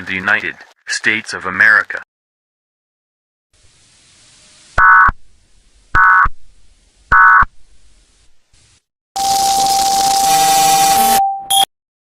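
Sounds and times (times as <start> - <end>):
faint hiss: 3.6 - 5.9, 7.7 - 8.9
digital data tone bursts: 4.8 - 5.1, 7.1 - 7.5, 9.2 - 11.7.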